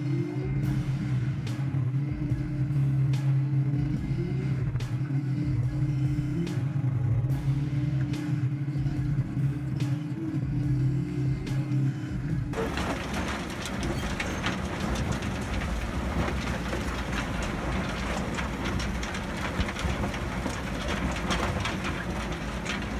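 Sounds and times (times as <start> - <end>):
machinery engine hum: 0.0 - 22.9
crackling and crushing noise: 12.5 - 22.9.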